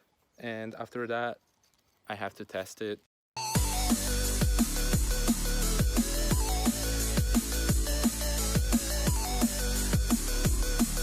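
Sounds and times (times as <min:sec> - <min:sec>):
electronic dance music: 0:03.4 - 0:11.0
wavering synth melody: 0:03.6 - 0:10.6
deep kick drums: 0:03.6 - 0:10.8.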